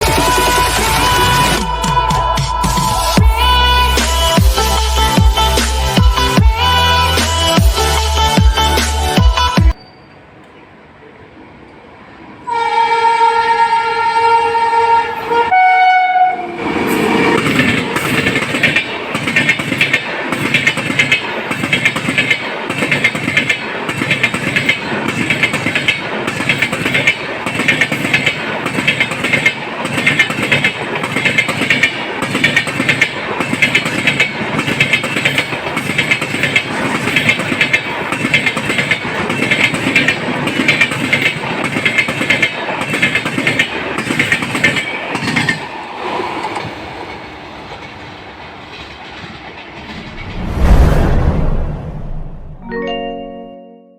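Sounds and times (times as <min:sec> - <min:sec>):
passing train rush: 0:00.0 - 0:53.0
locomotive horn blast: 0:12.5 - 0:16.6
wheels clacking over rail joints: 0:17.1 - 0:50.1.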